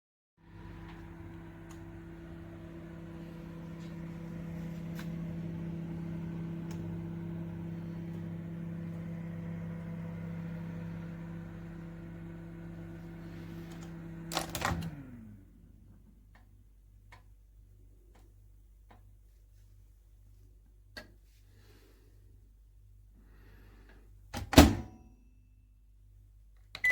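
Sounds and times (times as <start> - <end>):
microwave oven humming: 0.4 - 16.4
microwave clicks: 3.7 - 10.4.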